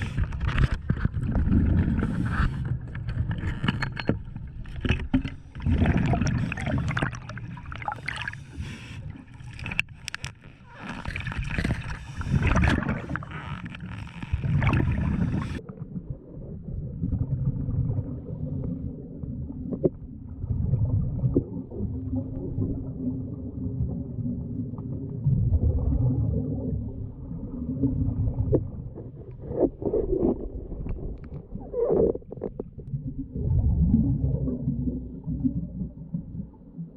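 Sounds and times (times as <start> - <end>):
water splashing and bubbling: 0.0 - 36.9
knocks and handling noise: 0.2 - 5.6.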